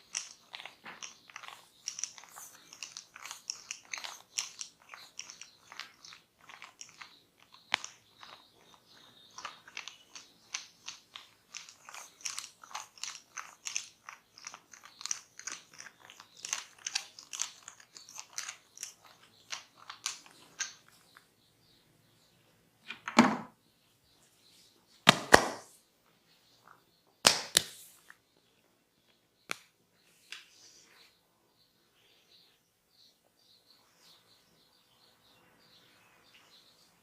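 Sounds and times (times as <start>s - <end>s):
hands scratching and rubbing hair: 0.0s - 20.5s.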